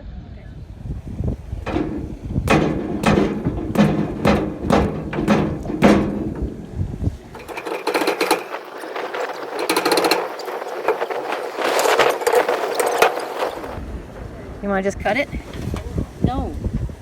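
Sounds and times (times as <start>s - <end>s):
light scraping: 1.6s - 13.8s
feet stomping on wooden dock: 1.7s - 7.6s.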